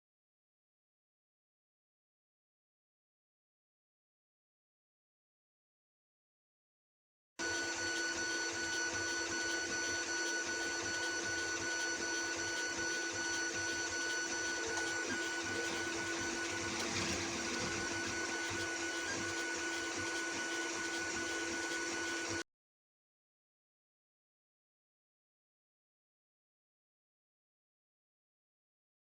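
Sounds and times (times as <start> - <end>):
small machine whining: 7.4 - 22.4.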